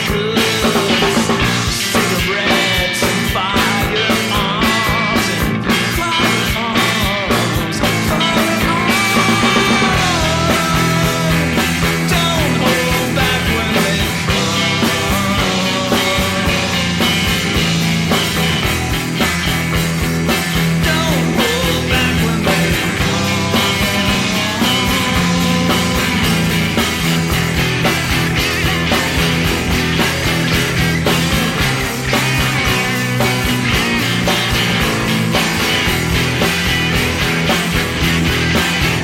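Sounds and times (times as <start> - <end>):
rock music: 0.0 - 39.0
pitch-bending melody line: 6.0 - 11.3.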